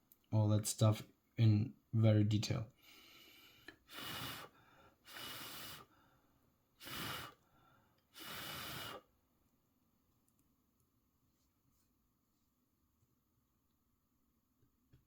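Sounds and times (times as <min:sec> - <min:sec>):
person breathing: 0:02.8 - 0:09.1.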